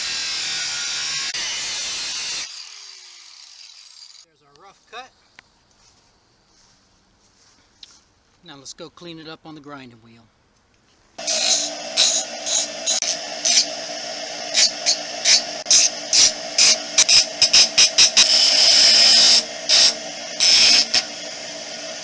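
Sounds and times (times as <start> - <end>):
bench grinder motor hum: 11.2 - 22.0
metal grinding rasp: 11.2 - 22.0.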